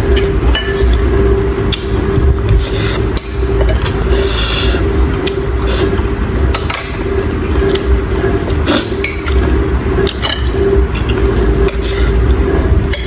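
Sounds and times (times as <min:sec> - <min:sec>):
steady low hum: 0:00.0 - 0:13.0
utensils clinking against bowl: 0:00.1 - 0:01.0
wet mouth eating sounds: 0:03.8 - 0:09.5, 0:11.4 - 0:12.7.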